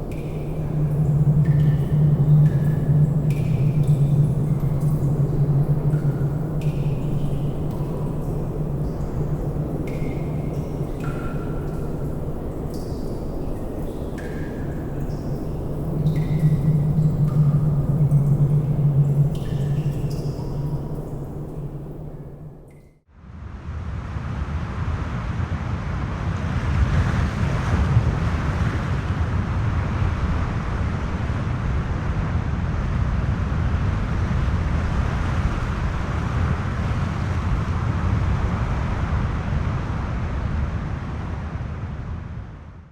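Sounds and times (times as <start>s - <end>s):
water drips plinking: 0.0s - 23.0s
low hum of wind in cave: 0.0s - 42.9s
wind and water noise: 0.0s - 42.9s.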